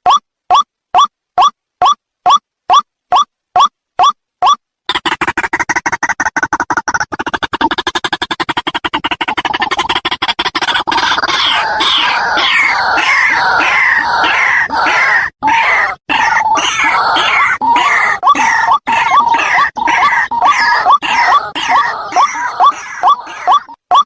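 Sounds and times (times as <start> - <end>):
waterhen calling: 10.9 - 24.0.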